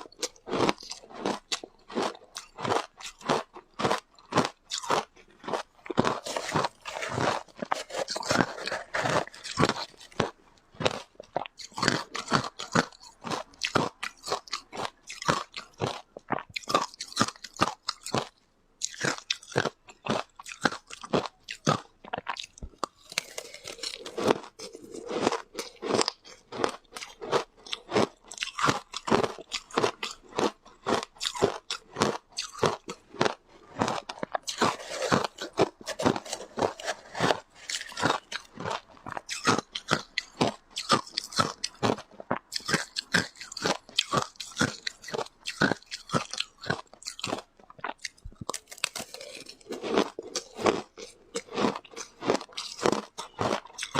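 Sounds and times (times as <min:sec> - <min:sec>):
chewing shaved ice: 0:00.0 - 0:53.9.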